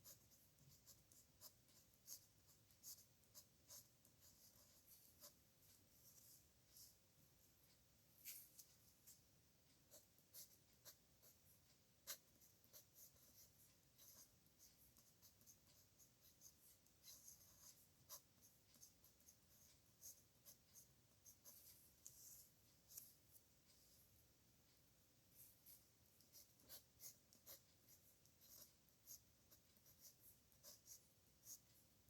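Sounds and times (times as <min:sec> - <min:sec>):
pen scratching on paper: 0:00.0 - 0:09.2, 0:09.8 - 0:24.0, 0:25.4 - 0:31.8.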